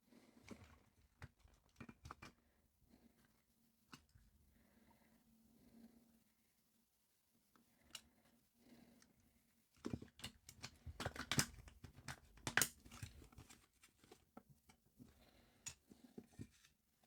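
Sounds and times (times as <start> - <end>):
clicks and taps of plastic parts: 9.8 - 14.8.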